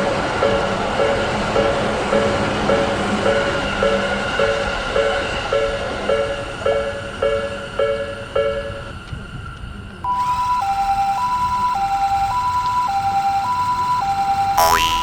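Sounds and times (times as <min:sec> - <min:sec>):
two-tone siren: 0:10.1 - 0:15.0.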